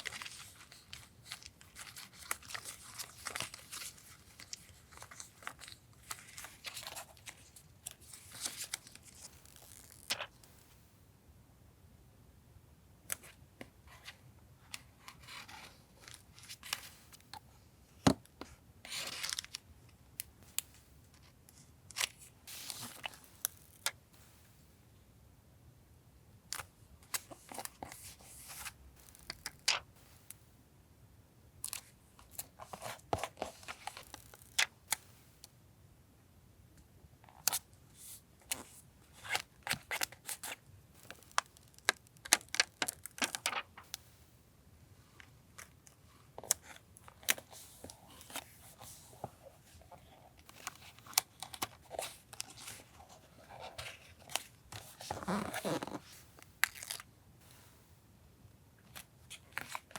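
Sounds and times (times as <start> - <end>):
paper rustling and tearing: 8.1 - 10.3.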